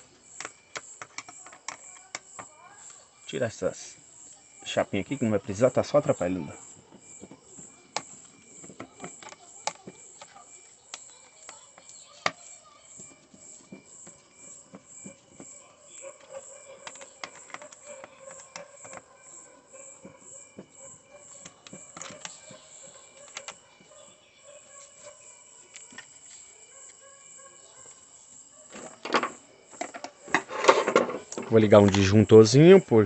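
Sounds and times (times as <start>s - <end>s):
faint high chirp: 0.0s - 28.6s
metal and plastic parts clicking: 0.4s - 2.4s.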